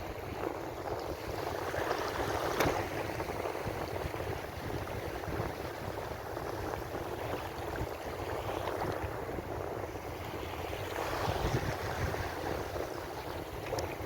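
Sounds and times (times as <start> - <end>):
ocean waves washing on shore: 0.0 - 14.0.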